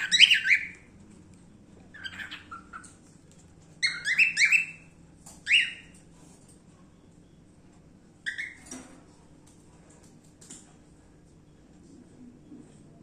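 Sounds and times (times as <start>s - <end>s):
cockatiel chirping: 0.0s - 0.9s, 1.9s - 3.0s, 3.8s - 6.0s, 8.2s - 8.7s.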